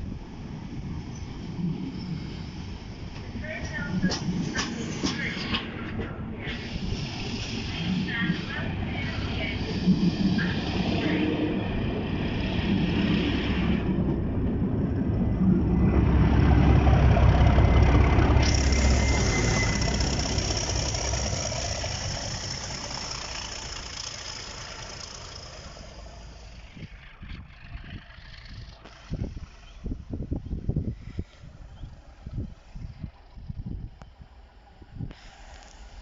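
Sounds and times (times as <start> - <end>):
diesel train engine rumble: 0.0 - 36.0
high steady whine: 17.4 - 27.6.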